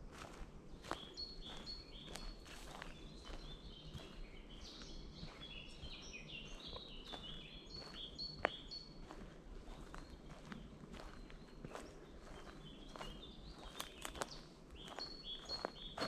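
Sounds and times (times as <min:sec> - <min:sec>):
footsteps on forest path: 0:00.0 - 0:16.0
small birds singing: 0:00.0 - 0:16.0.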